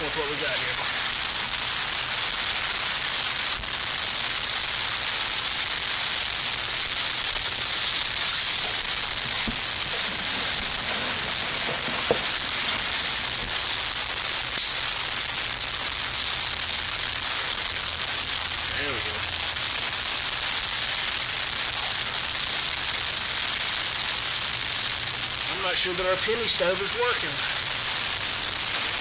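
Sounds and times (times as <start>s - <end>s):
wood fire hissing and crackling: 0.0s - 29.0s.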